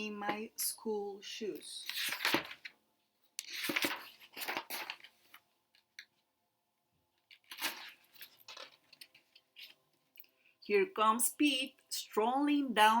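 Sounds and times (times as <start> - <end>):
book pages rustling: 1.8 - 2.8, 3.4 - 6.2, 7.2 - 9.9.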